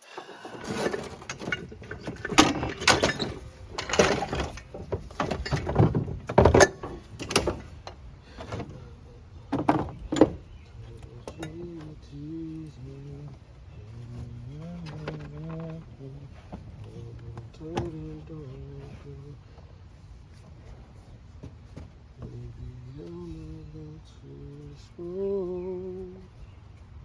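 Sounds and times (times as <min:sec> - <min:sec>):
metal parts and tools clanking: 0:00.1 - 0:19.7.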